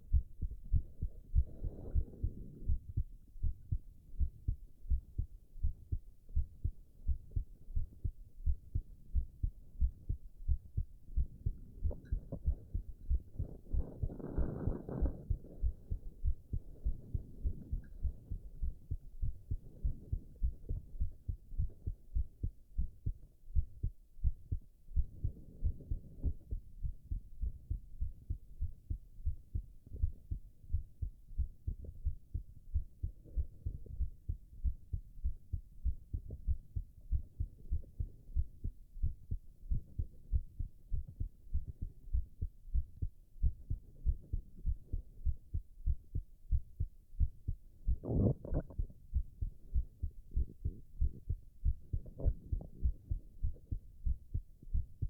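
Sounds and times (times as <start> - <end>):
heartbeat thumping: 0.0 - 55.0
stomach growling: 11.8 - 18.0, 47.9 - 49.2, 51.9 - 53.8.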